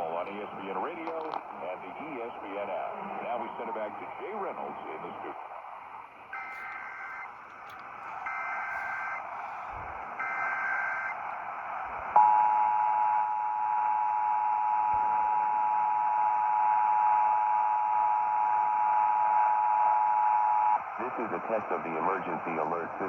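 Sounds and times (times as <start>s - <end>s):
shrill warbling data tones: 6.4s - 11.2s.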